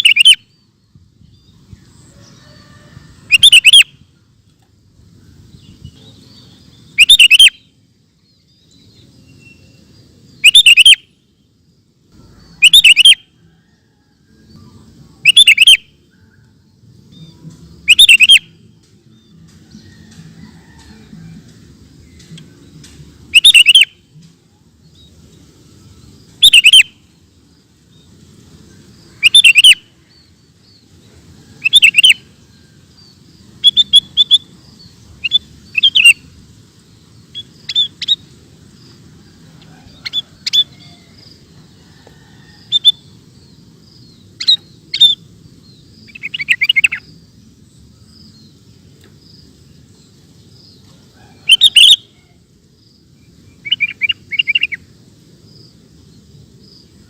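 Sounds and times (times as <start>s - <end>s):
bird singing bubbly phrases: 0.0s - 0.6s, 3.3s - 3.9s, 5.7s - 7.7s, 9.2s - 11.0s, 12.5s - 13.2s, 15.2s - 16.0s, 17.2s - 18.6s, 23.3s - 24.0s, 26.3s - 27.0s, 29.2s - 30.3s, 31.6s - 32.2s, 33.5s - 36.3s, 37.2s - 38.3s, 45.9s - 47.2s, 53.5s - 54.8s.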